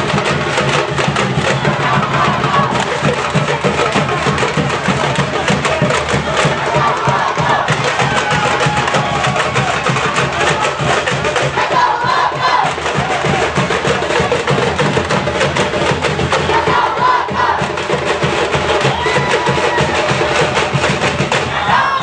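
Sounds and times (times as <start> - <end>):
crowd shouting: 0.0 - 22.0
festive music with fast percussion: 0.0 - 22.0.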